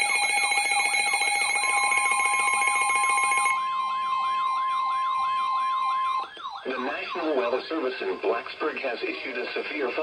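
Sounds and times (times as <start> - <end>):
steady high alarm tones: 0.0 - 7.4
sweeping siren tone: 3.4 - 7.4.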